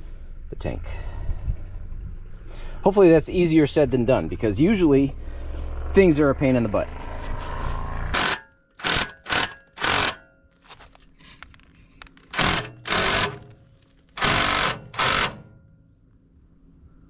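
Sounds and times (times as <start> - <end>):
impact wrench bursts: 8.2 - 10.3, 12.1 - 15.6.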